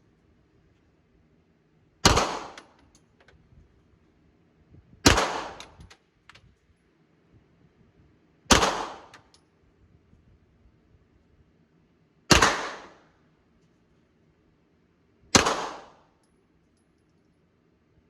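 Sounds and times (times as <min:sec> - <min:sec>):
gunshots with echo: 0:05.1 - 0:05.6, 0:08.5 - 0:09.1, 0:12.3 - 0:13.0, 0:15.4 - 0:15.9
faint small clicks: 0:05.6 - 0:06.6.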